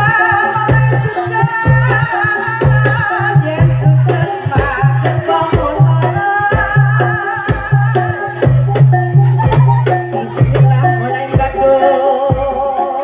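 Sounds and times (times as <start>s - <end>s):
hand drum and gong percussion: 0.0s - 13.0s
wavering high melody: 8.2s - 12.3s.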